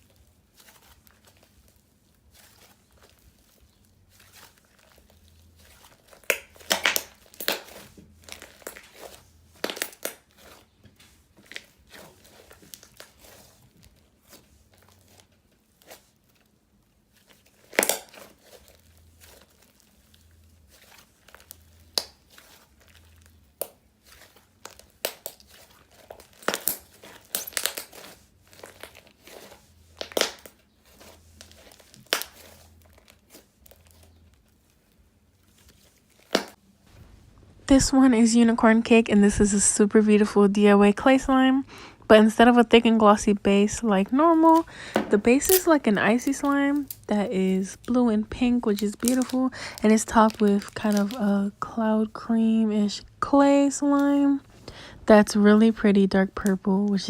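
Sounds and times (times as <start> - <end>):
slime crackling and popping: 0.0 - 36.6, 43.2 - 52.2.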